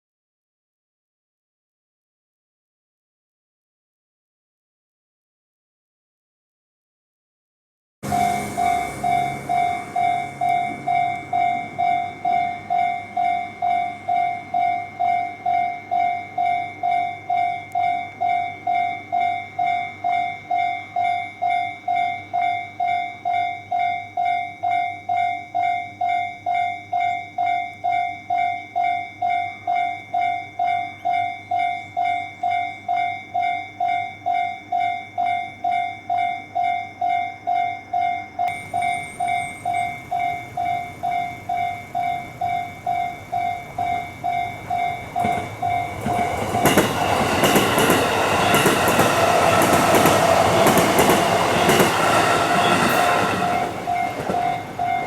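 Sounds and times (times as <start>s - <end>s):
level crossing warning bell ringing: 8.0s - 55.0s.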